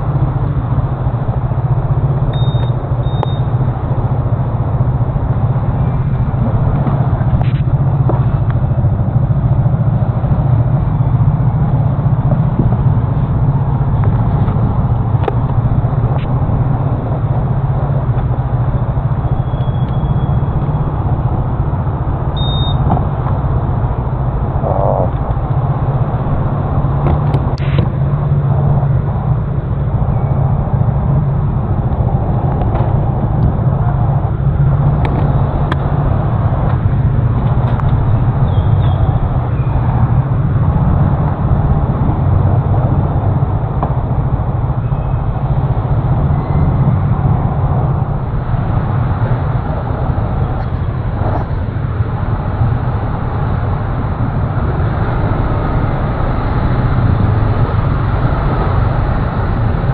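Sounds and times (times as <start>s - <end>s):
road noise: 0.0s - 59.9s
wind noise on microphone: 0.0s - 59.9s.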